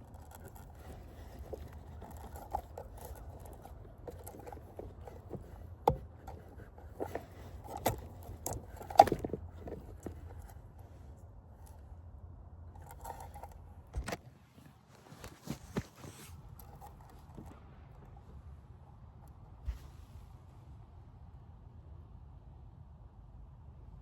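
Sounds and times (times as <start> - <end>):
connectors clicking and rattling: 0.0 - 11.8, 12.7 - 14.2, 15.2 - 17.6
low steady hum: 0.0 - 24.0.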